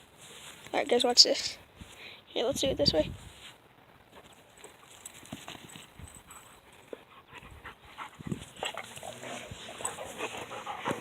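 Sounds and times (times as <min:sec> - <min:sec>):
puppies making faint sounds: 0:06.2 - 0:11.0.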